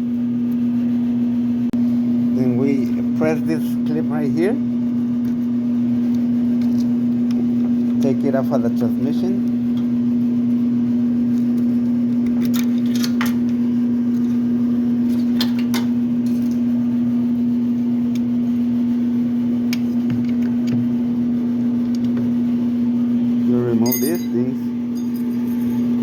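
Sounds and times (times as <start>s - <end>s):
mechanical device humming: 0.0s - 26.0s.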